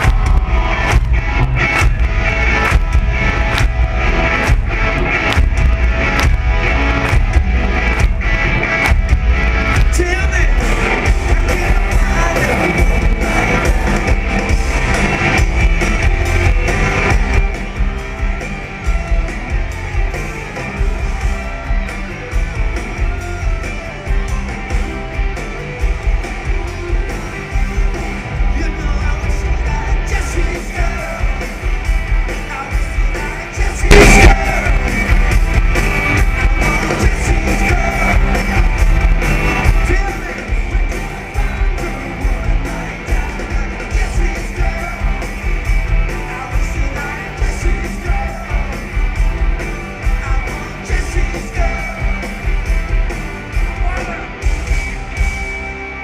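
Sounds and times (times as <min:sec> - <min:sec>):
live rock band playing: 0:00.0 - 0:56.0
sudden loud hit: 0:33.9 - 0:34.8.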